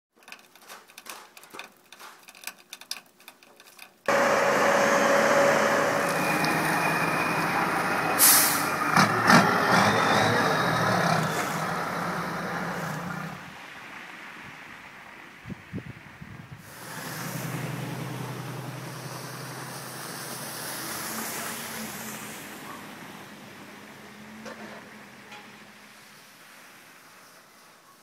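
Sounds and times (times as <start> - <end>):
sharp hiss: 4.1 - 8.9, 16.6 - 22.6
heavy engine running: 4.1 - 13.4, 16.6 - 25.6.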